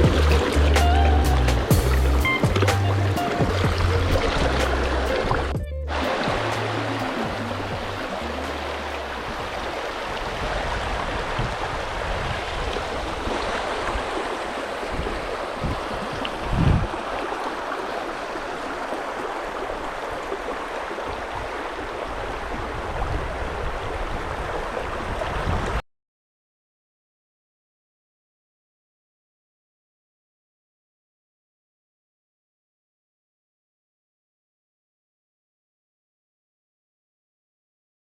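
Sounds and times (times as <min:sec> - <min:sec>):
water rushing over stones: 0:00.0 - 0:25.8.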